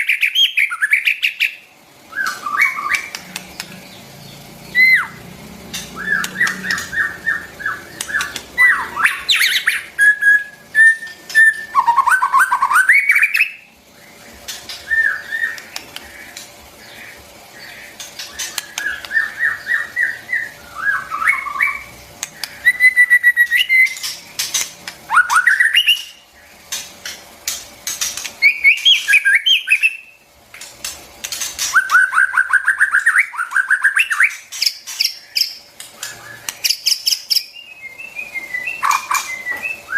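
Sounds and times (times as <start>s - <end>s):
sharp bird clicks: 2.2s - 4.0s, 5.7s - 9.8s, 14.5s - 16.5s, 17.9s - 19.3s, 22.2s - 22.8s, 23.4s - 29.9s
bird singing whistled notes: 4.7s - 5.2s, 6.0s - 13.7s, 14.8s - 15.6s, 18.4s - 21.9s, 22.6s - 24.1s, 25.1s - 26.2s, 28.4s - 30.2s, 31.7s - 39.9s.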